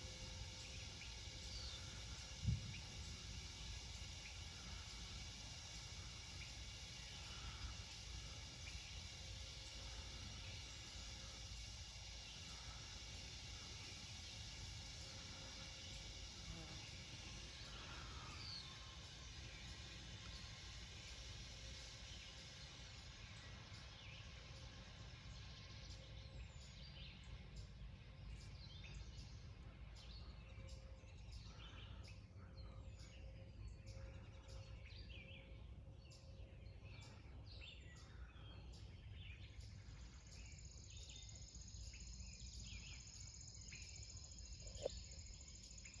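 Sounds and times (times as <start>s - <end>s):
high-pitched whine: 0.0s - 27.8s
low steady rumble: 0.0s - 46.0s.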